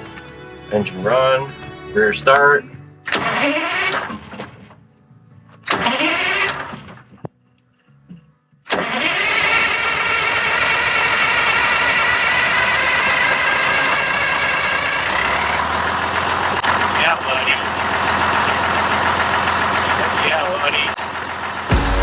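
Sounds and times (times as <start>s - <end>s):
bus diesel engine starting: 3.0s - 4.8s, 5.6s - 7.3s, 8.6s - 22.0s.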